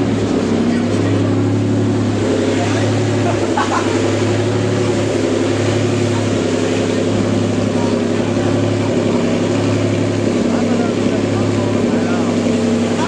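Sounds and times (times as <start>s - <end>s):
car engine running steadily: 0.0s - 13.0s.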